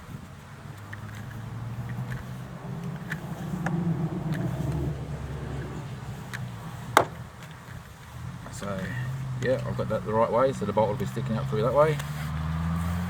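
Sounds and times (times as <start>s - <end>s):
vehicle engine hum: 0.0s - 13.0s
seat belt clicks: 0.6s - 7.9s.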